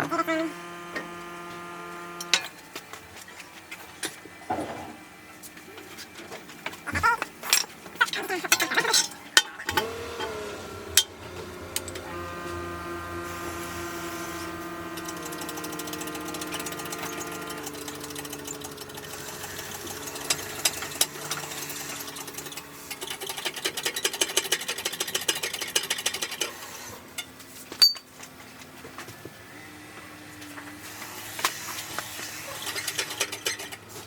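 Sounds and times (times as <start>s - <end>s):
impact wrench whirring and rattling: 0.0s - 2.8s, 9.7s - 27.2s, 30.8s - 34.0s.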